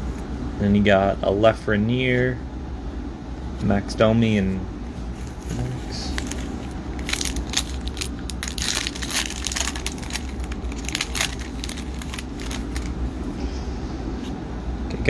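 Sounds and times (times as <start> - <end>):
foil wrapper tearing and crinkling: 6.1 - 13.0.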